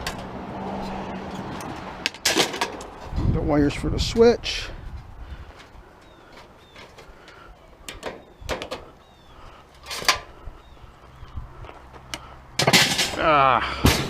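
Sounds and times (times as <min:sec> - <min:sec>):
metal clatter: 0:12.6 - 0:13.2.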